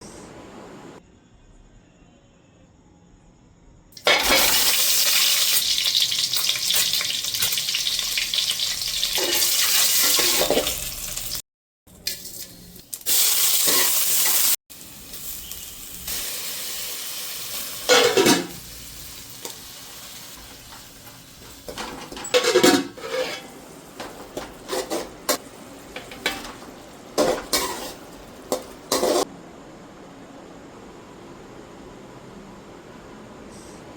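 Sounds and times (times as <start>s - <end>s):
food sizzling in hot oil: 4.0s - 11.4s, 12.0s - 29.3s
spatula scraping a pan: 21.4s - 29.3s.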